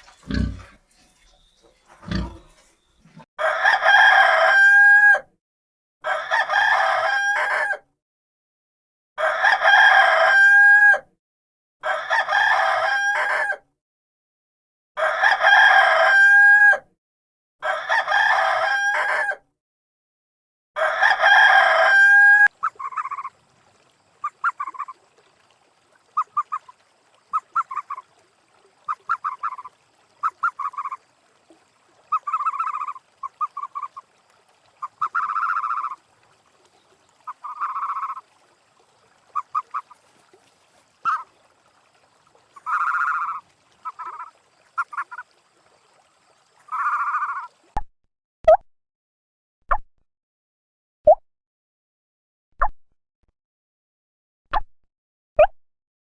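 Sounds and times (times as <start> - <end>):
rooster crowing: 3.4 - 5.3, 6.0 - 7.8, 9.2 - 11.1, 11.8 - 13.6, 15.0 - 16.9, 17.6 - 19.4, 20.8 - 22.5.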